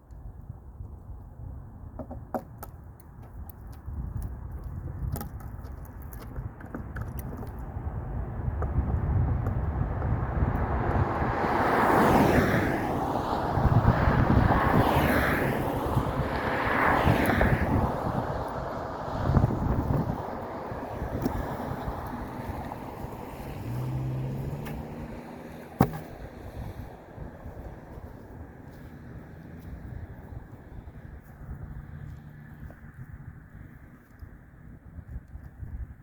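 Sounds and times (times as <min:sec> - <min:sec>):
road vehicle approaching: 0:07.4 - 0:35.6.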